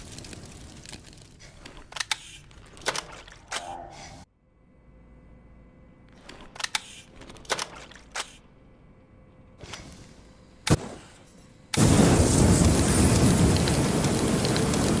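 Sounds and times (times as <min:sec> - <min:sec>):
flamethrower blast: 0:11.8 - 0:15.0.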